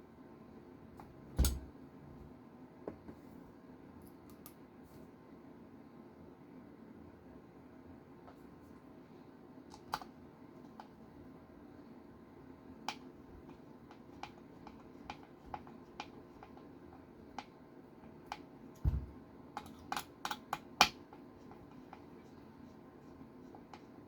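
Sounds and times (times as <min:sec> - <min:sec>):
dull thump: 0:18.8 - 0:19.2.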